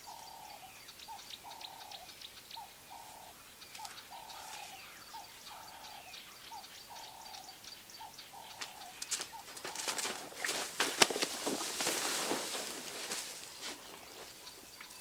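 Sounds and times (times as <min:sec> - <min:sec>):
faint high bird chirps: 0:00.0 - 0:09.5.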